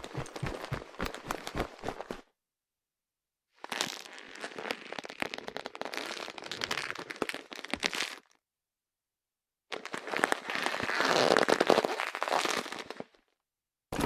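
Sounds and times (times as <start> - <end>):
handbag material rustling: 0.0 - 2.2.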